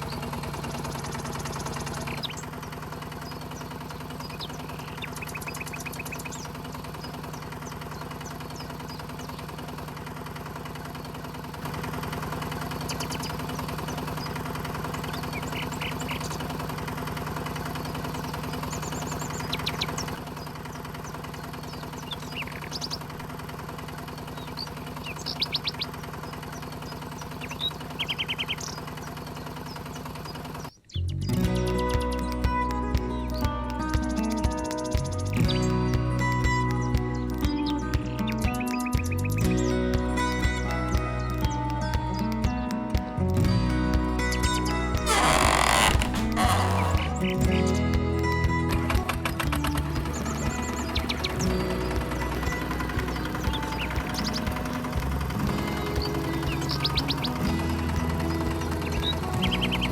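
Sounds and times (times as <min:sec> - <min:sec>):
small motor humming: 0:00.0 - 0:30.7, 0:45.0 - 0:47.5.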